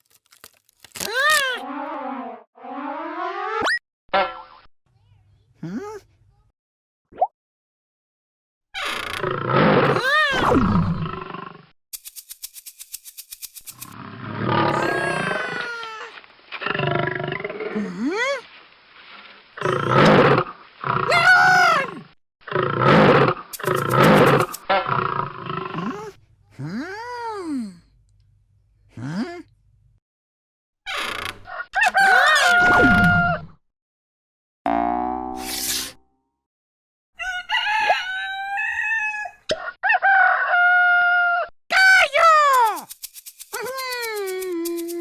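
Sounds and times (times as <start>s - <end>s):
big cat roaring: 9.2s - 11.6s, 14.0s - 15.6s, 19.6s - 26.2s
rooster crowing: 37.2s - 41.4s.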